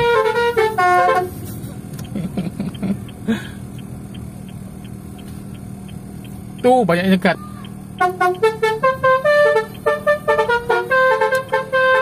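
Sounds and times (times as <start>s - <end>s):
car musical horn: 0.0s - 1.8s, 7.4s - 12.0s
vehicle background noise: 0.0s - 12.0s.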